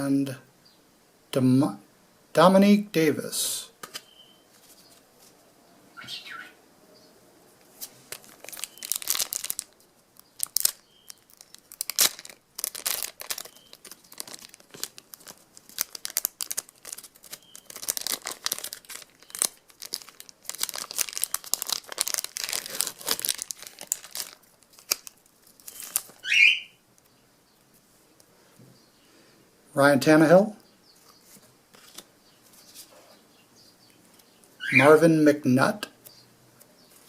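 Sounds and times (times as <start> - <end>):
wrapper tearing and crinkling: 7.8 - 26.2.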